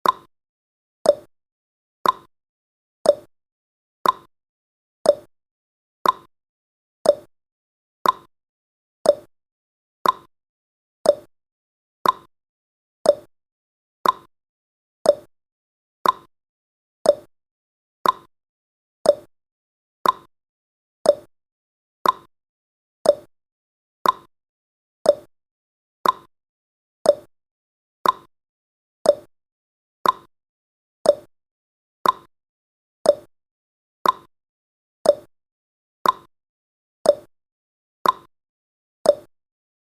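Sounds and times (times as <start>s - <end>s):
clock ticking: 2.0s - 2.3s, 4.0s - 4.3s, 6.0s - 6.3s, 8.0s - 8.3s, 10.0s - 10.3s, 12.0s - 12.3s, 14.0s - 14.3s, 16.0s - 16.3s, 18.0s - 18.3s, 20.0s - 20.3s, 21.1s - 21.3s, 22.0s - 22.3s, 24.0s - 24.3s, 26.0s - 26.3s, 28.0s - 28.3s, 29.1s - 29.3s, 30.0s - 30.3s, 31.1s - 31.3s, 32.0s - 32.3s, 33.1s - 33.3s, 34.0s - 34.3s, 35.1s - 35.3s, 36.0s - 36.3s, 38.0s - 38.3s.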